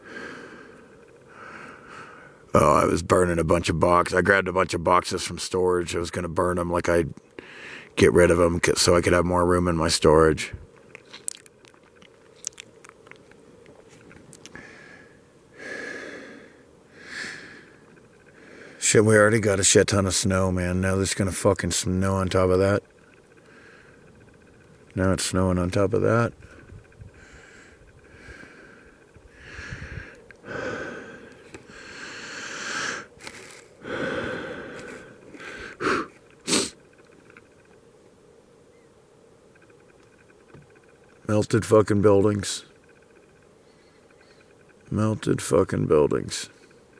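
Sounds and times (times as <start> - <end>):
man breathing heavily: 0.0 - 2.5, 7.4 - 8.0, 14.5 - 18.8, 26.4 - 33.1, 33.8 - 36.8
faint clicks: 10.7 - 14.8, 17.4 - 18.9, 22.3 - 30.5, 34.8 - 38.2, 39.5 - 41.6, 42.3 - 45.5.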